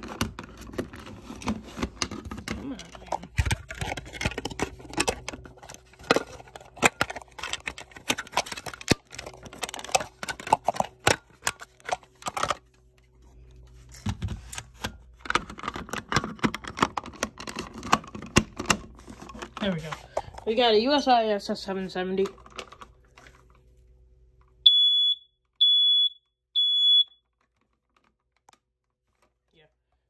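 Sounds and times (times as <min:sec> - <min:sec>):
plastic clicks and scrapes: 0:00.0 - 0:20.4, 0:27.3 - 0:29.5.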